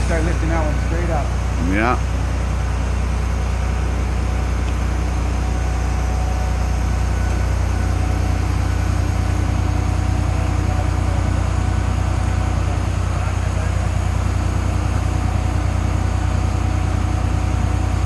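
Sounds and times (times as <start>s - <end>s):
heavy truck engine running: 0.0s - 18.0s.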